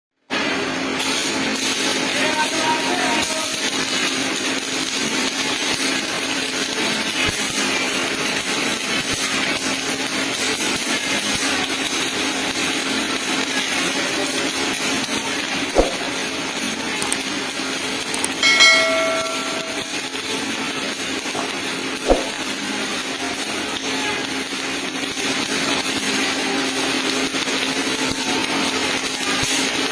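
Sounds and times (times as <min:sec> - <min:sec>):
sharp knock: 0:15.8 - 0:16.0, 0:22.1 - 0:22.4.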